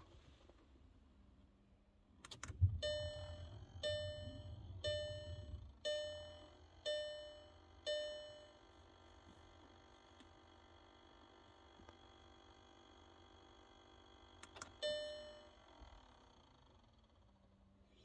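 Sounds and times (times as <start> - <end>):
car warning chime: 2.8 - 8.5, 14.8 - 15.5.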